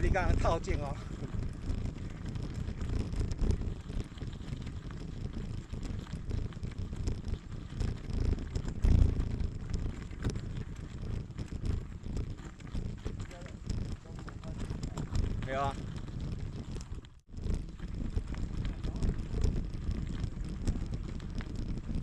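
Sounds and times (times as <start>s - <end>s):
small clicks: 0.0s - 22.0s
wind buffeting microphone: 0.0s - 22.0s.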